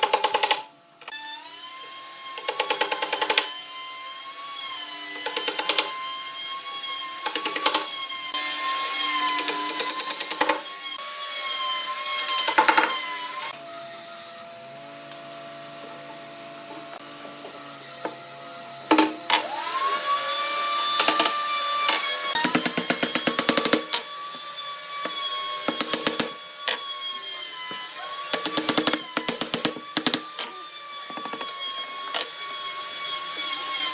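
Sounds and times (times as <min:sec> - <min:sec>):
power tool motor whining: 0:17.0 - 0:33.9.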